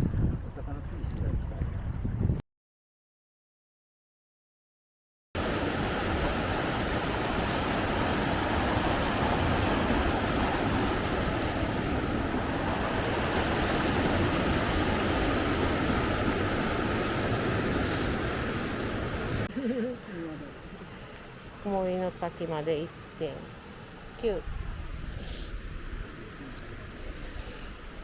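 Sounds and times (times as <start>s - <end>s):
mountain stream rushing: 5.4s - 19.5s, 25.0s - 28.0s.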